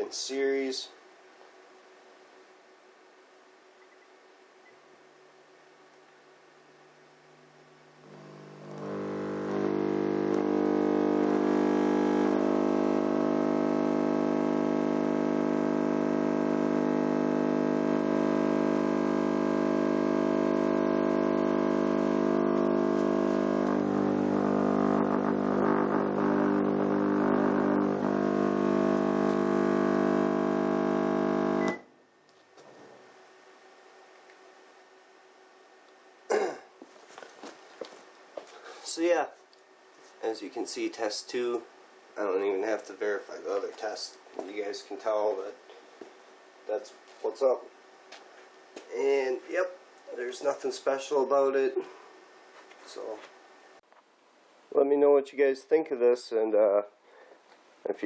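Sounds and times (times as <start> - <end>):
subwoofer low test tone buzz: 6.9 - 31.9.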